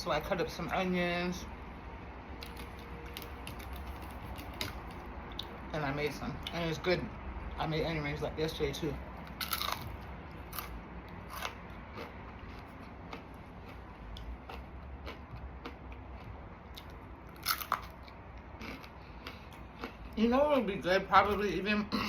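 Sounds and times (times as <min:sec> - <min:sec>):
crunching fried food: 0:02.4 - 0:06.7, 0:09.2 - 0:20.7
quiet chewing: 0:09.2 - 0:20.2.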